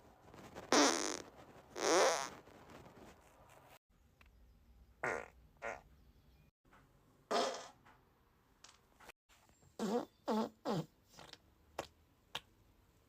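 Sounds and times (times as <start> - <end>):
human farts: 0.7 - 2.4, 5.0 - 5.8, 7.3 - 7.8, 9.8 - 11.9.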